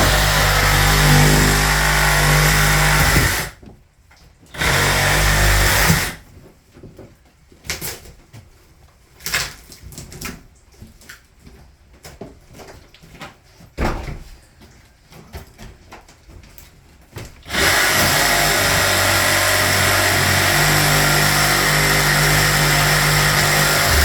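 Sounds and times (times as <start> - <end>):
power saw running: 0.0 - 3.6, 4.6 - 6.2, 17.5 - 24.0.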